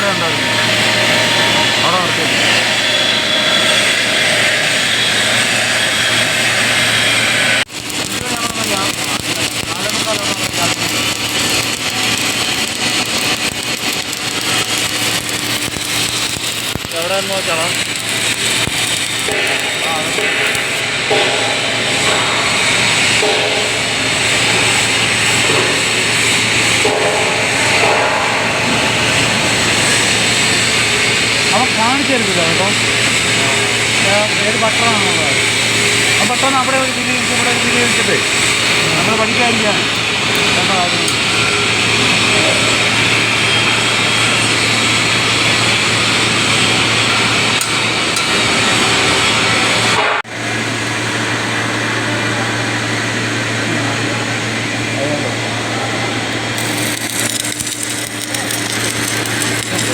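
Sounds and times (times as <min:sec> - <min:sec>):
welding machinery humming: 0:00.0 - 0:59.9.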